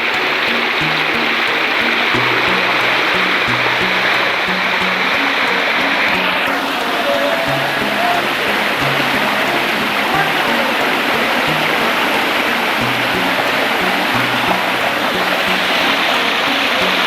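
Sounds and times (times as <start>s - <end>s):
music with low bass pattern: 0.0s - 17.0s
waterfall roaring: 0.0s - 17.0s.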